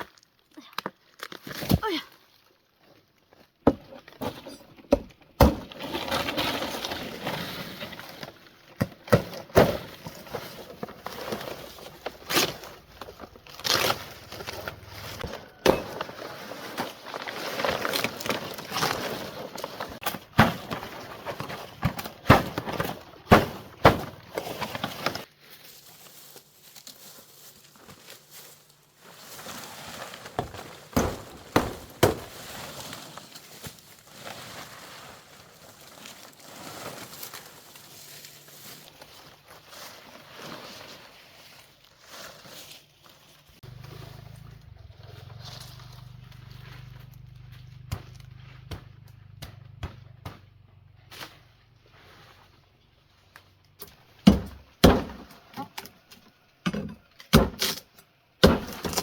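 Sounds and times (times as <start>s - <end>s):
rustling scraping noise: 5.6s - 8.7s, 9.8s - 47.7s, 51.0s - 53.3s.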